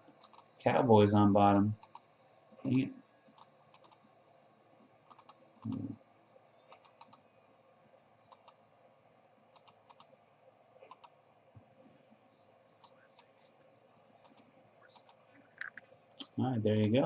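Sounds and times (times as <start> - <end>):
computer mouse clicks: 0.2 - 0.5, 1.8 - 4.0, 5.1 - 5.9, 6.7 - 7.2, 8.3 - 8.6, 9.5 - 10.1, 10.8 - 11.2, 12.8 - 13.4, 14.2 - 17.0.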